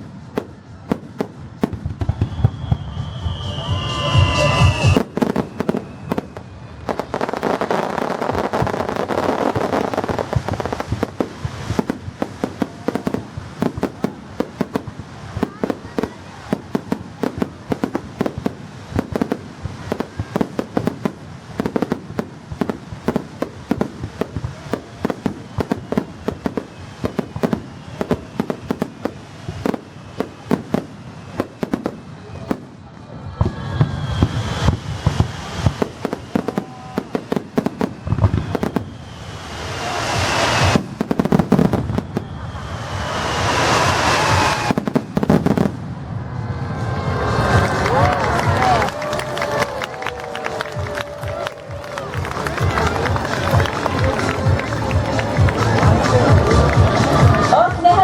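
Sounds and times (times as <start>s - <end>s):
fireworks crackling and banging: 0.0s - 58.0s.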